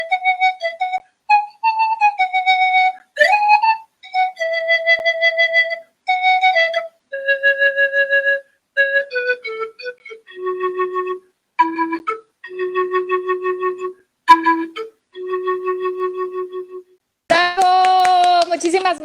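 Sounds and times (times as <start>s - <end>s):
solo flute melody: 0.0s - 17.0s.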